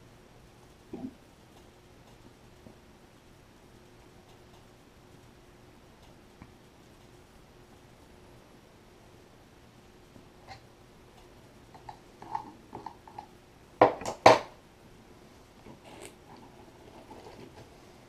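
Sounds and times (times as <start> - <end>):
soft rustling: 15.3 - 18.0.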